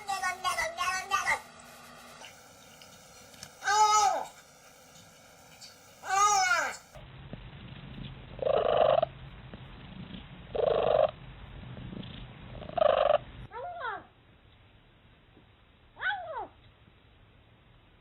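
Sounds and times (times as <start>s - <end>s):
cat purring: 7.8s - 13.5s.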